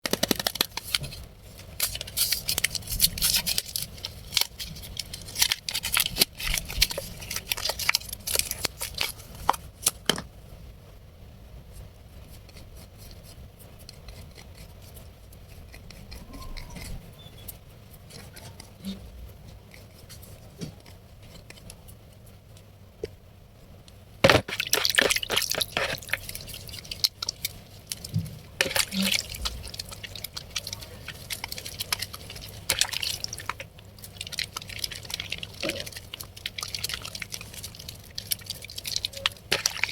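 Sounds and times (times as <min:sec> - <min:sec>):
soap lather squishing: 0:00.1 - 0:10.0, 0:12.2 - 0:17.0, 0:24.2 - 0:39.9.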